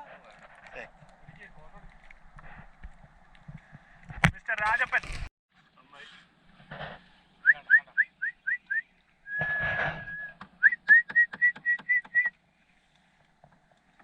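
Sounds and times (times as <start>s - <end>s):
person whistling notes: 7.4s - 12.3s.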